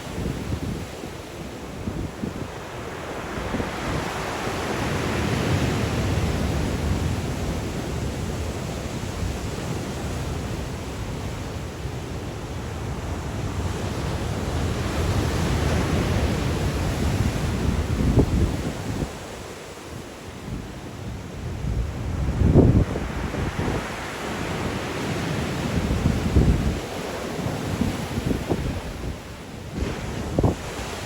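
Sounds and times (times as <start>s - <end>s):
wind buffeting microphone: 14.8s - 19.4s, 20.5s - 31.0s
waves breaking: 22.5s - 31.0s.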